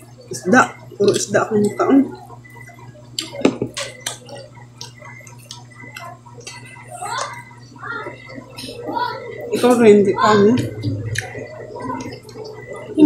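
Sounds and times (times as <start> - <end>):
wet eating clicks and smacks: 1.0 - 1.8, 3.1 - 7.5, 10.6 - 11.4.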